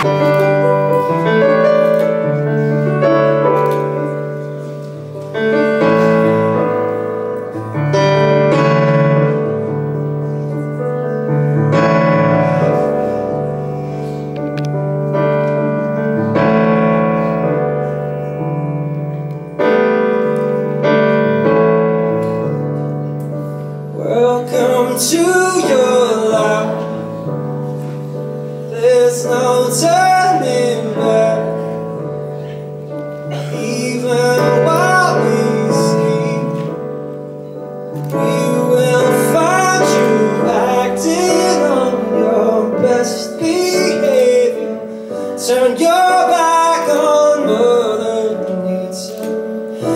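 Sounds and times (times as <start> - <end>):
piano playing sustained chords: 0.0 - 49.9.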